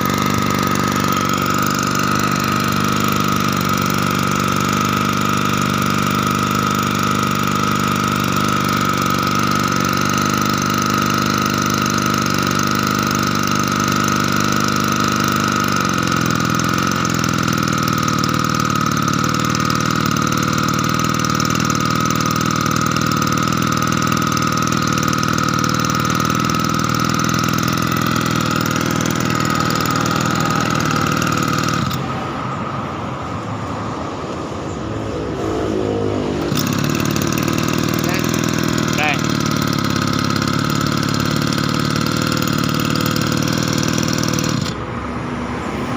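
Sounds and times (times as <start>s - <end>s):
water pump engine running: 0.0s - 45.9s
high whine: 26.7s - 41.3s.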